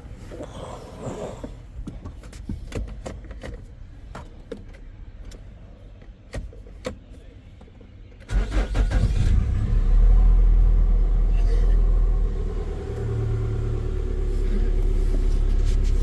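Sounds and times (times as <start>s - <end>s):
car engine starting and rumbling: 8.0s - 16.0s.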